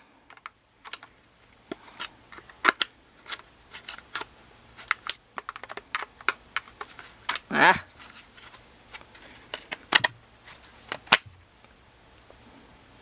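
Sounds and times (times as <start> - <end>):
plastic clicks and knocks: 4.8 - 7.5, 9.5 - 10.2.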